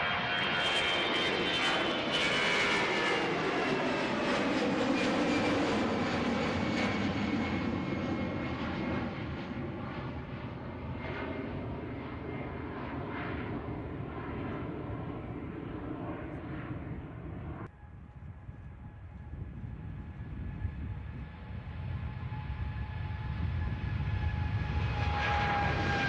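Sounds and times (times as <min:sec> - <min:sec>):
airliner engines: 0:00.0 - 0:26.0.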